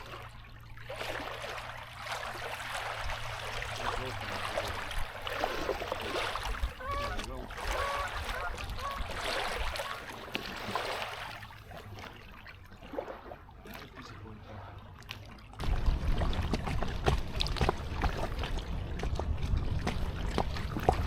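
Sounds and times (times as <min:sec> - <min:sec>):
paddle splashing water: 0:00.0 - 0:21.0
low rumble: 0:15.6 - 0:21.0.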